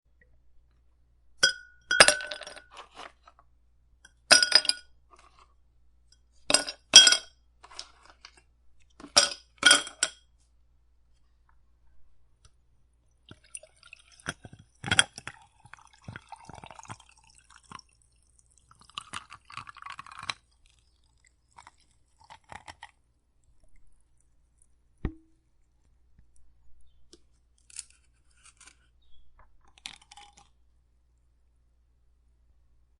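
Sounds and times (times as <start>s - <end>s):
water pouring over ice: 13.3s - 24.3s.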